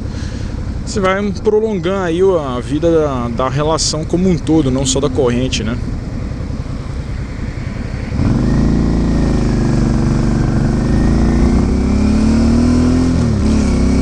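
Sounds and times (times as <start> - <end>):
motorcycle engine under throttle: 5.9 - 14.0.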